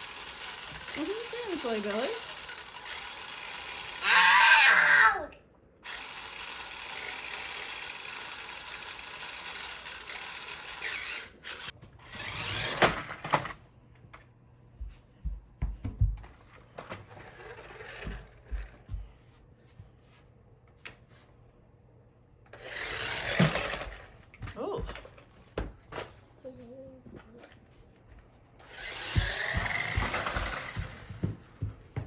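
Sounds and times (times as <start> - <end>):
toy truck knocking and clattering: 0.0 - 1.3, 28.7 - 31.5
toy truck electric motor whirring: 0.0 - 4.5, 5.8 - 13.6, 16.8 - 18.8, 22.5 - 24.3, 28.6 - 31.2.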